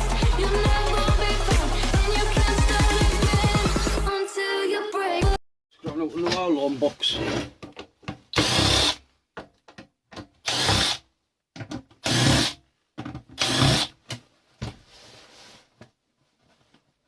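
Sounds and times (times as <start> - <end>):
power drill bursts: 8.4 - 9.0, 10.5 - 11.0, 13.4 - 13.9.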